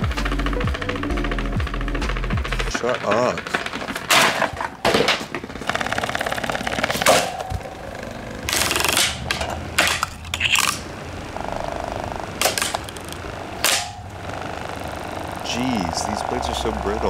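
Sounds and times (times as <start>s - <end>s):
fan motor buzzing hum: 0.0s - 17.0s
fan being smashed: 2.8s - 5.8s, 8.5s - 10.8s, 12.4s - 14.0s.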